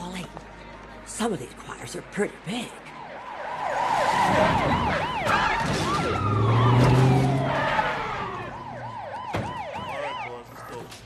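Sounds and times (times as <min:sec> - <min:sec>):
police sirens yelping: 0:02.4 - 0:11.0.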